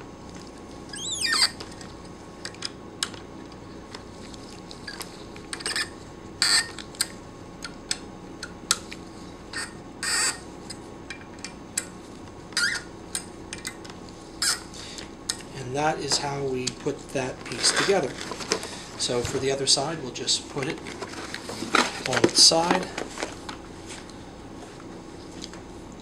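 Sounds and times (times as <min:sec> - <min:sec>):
squeak: 0:00.9 - 0:01.6, 0:09.6 - 0:10.4, 0:12.6 - 0:12.9, 0:14.4 - 0:14.7.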